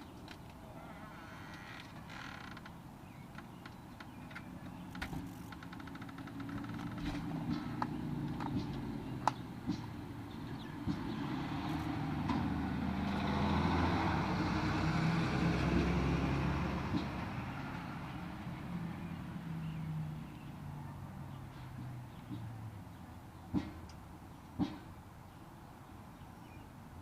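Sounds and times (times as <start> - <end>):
road vehicle driving past: 0.6 - 2.3, 6.2 - 23.1.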